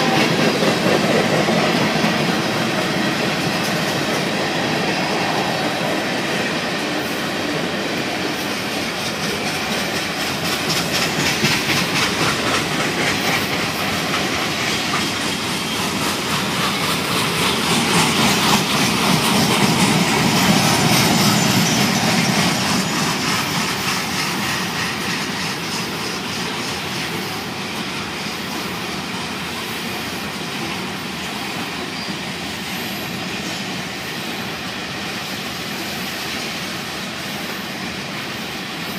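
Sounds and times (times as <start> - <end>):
freight train wheels clacking: 0.0 - 38.9.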